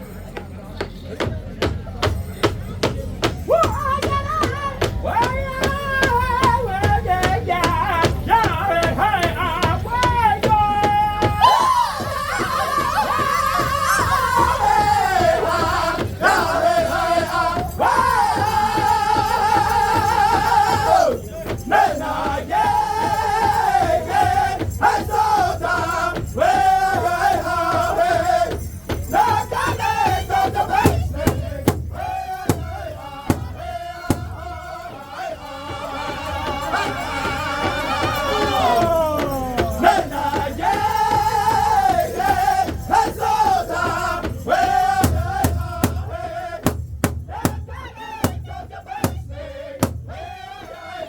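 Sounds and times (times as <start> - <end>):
big drum beat: 0.8 - 50.9
drum group singing in high voices: 2.4 - 51.0
loud single drum strikes: 30.8 - 34.5, 45.0 - 50.3.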